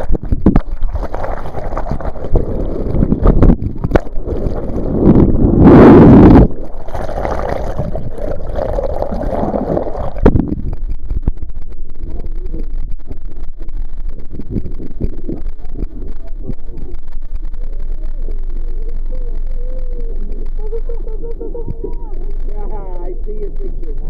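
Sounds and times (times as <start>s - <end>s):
water noise around boat: 0.0s - 24.0s
wind buffeting microphone: 2.8s - 6.6s.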